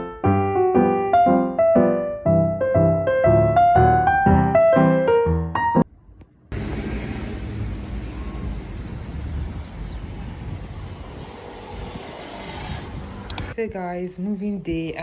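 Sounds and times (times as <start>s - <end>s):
piano music: 0.0s - 5.9s
vehicle rumble: 6.3s - 13.6s.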